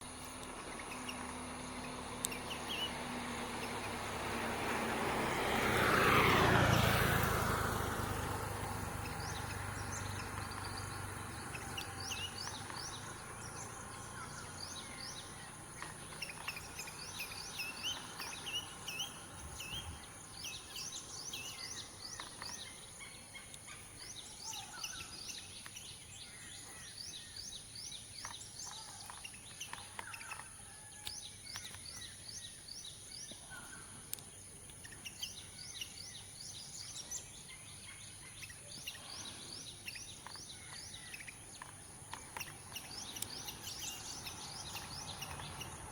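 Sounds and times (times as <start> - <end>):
birds chirping: 0.0 - 45.9
vehicle passing: 0.5 - 22.8, 41.9 - 45.9.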